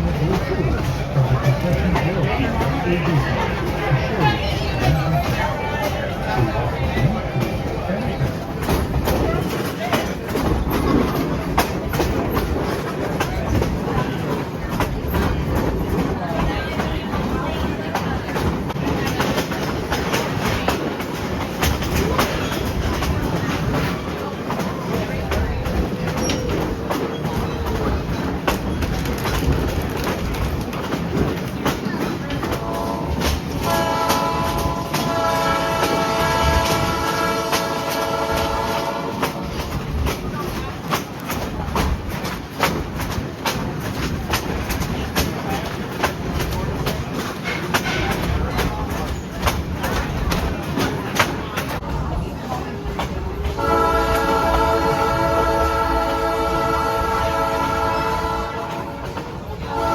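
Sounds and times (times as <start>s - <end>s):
train rumbling on track: 0.0s - 59.9s
wheels clicking over rails: 0.0s - 59.9s
train horn chord: 32.6s - 39.6s, 53.6s - 59.1s, 59.7s - 59.9s.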